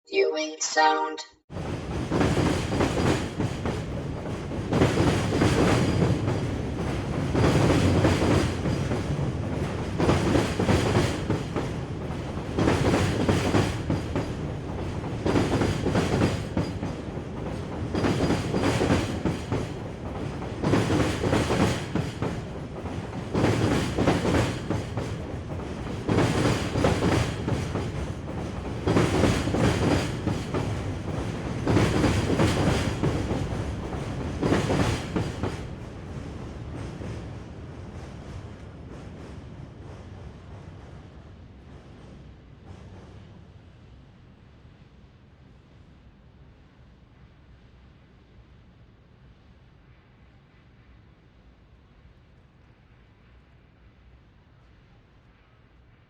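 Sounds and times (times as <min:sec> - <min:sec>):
train wheels rumbling on rails: 0:01.5 - 0:44.3
clickety-clack of train wheels: 0:01.5 - 0:44.4.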